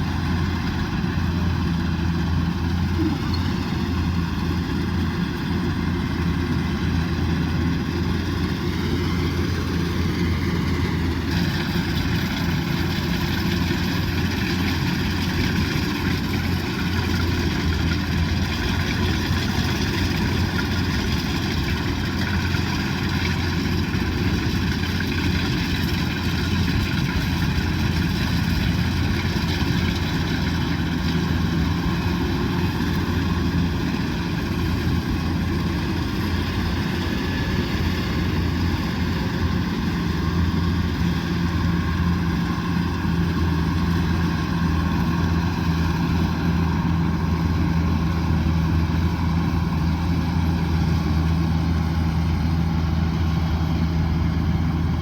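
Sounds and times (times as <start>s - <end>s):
combine harvester diesel rumble: 0.0s - 55.0s.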